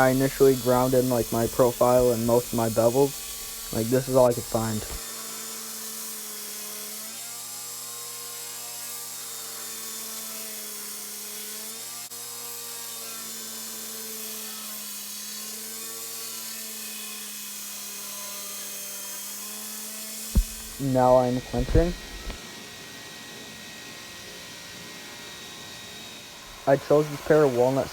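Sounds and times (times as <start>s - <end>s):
grinding hiss: 0.0s - 5.0s, 20.4s - 22.4s
power grinder motor hum: 20.4s - 22.4s.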